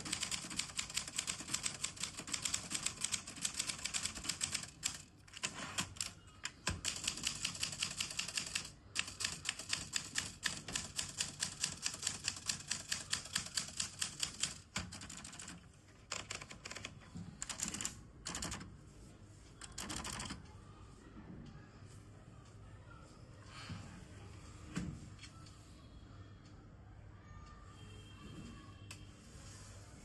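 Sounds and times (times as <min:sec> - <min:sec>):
manual typewriter typing: 0:00.0 - 0:18.7, 0:19.6 - 0:20.4.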